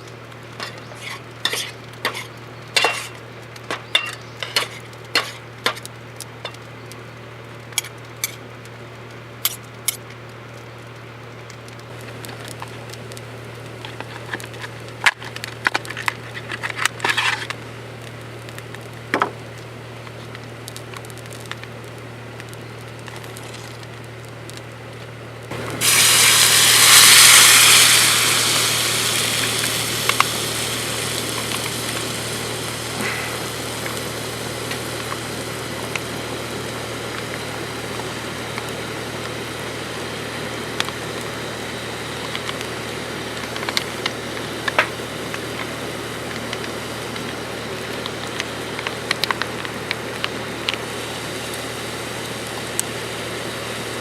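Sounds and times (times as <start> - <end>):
food sizzling in hot pan: 25.5 - 54.0.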